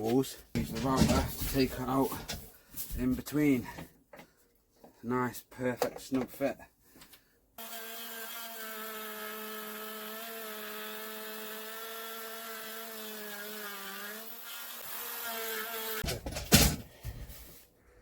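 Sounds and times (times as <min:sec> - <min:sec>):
electric wood router motor: 0:07.6 - 0:16.0.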